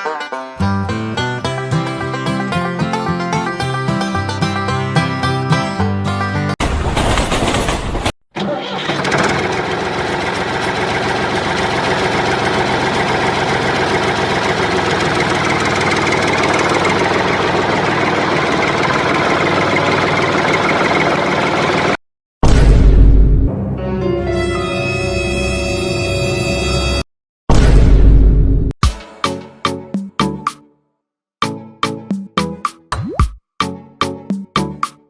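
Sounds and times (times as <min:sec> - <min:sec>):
small engine running steadily: 0:08.9 - 0:22.0.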